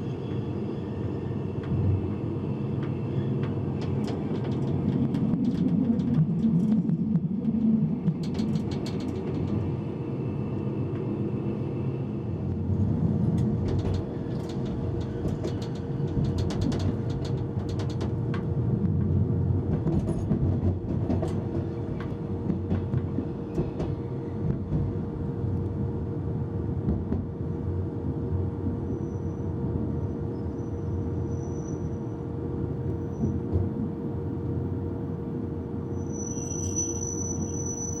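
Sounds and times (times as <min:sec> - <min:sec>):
train rumbling on track: 0:00.0 - 0:38.0
wheels clicking over rails: 0:13.3 - 0:18.5.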